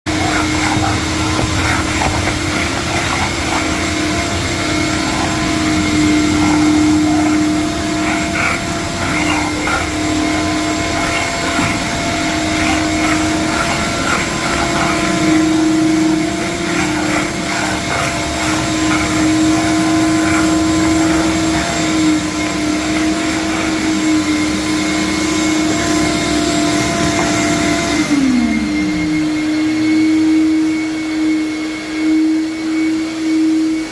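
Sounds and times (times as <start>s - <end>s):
vacuum cleaner whining: 0.0s - 33.9s.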